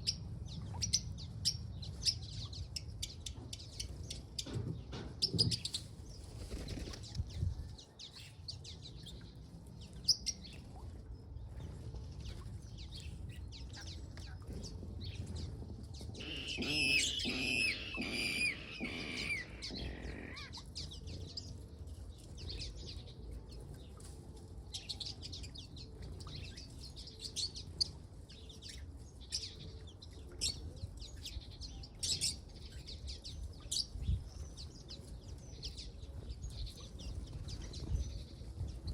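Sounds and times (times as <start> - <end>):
bird squealing falling notes: 16.2 - 20.5.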